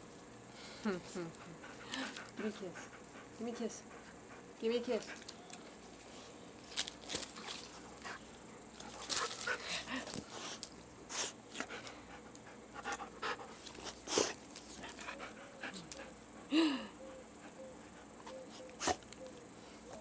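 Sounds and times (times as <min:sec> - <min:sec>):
dog panting: 0:01.4 - 0:05.3, 0:11.2 - 0:16.5.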